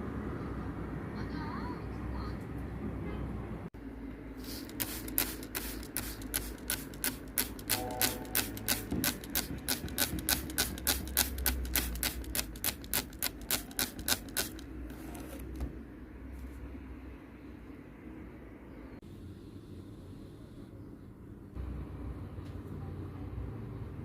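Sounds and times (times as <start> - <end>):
fast sharp clicks: 4.7 - 14.6.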